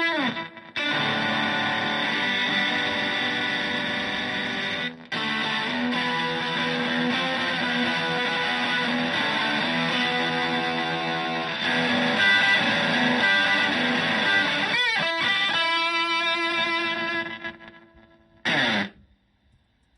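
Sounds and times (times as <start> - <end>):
fuzzy electric guitar: 0.0 - 19.0.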